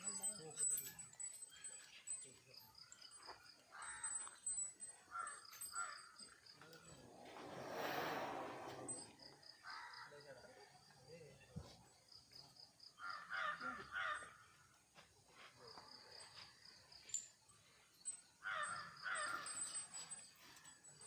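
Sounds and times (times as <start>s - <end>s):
crows cawing: 3.7s - 4.4s, 9.6s - 10.1s, 13.0s - 14.6s, 18.4s - 19.6s.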